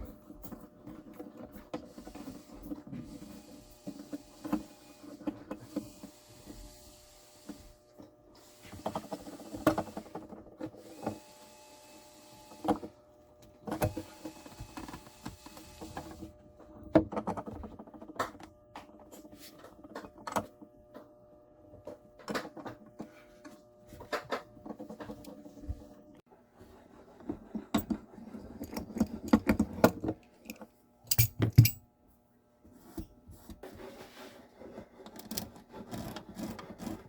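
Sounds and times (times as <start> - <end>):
tools clicking and knocking: 27.7 - 31.8.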